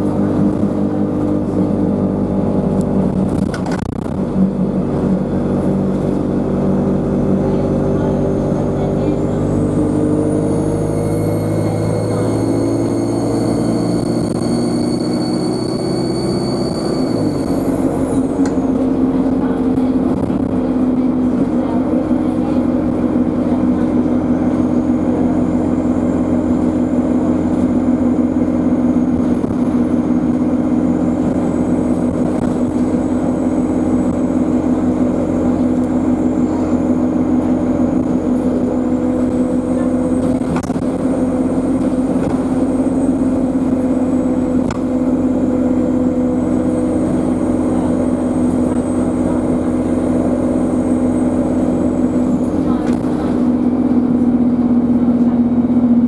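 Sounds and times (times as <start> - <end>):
bus diesel engine droning: 0.0 - 56.0
turbocharger whine: 0.0 - 56.0
higher-pitched whine: 9.9 - 18.7.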